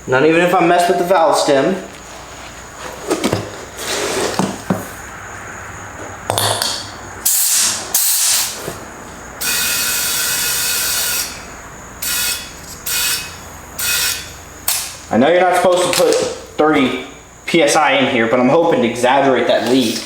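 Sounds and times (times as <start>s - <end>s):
compressed air hissing: 7.2s - 15.1s.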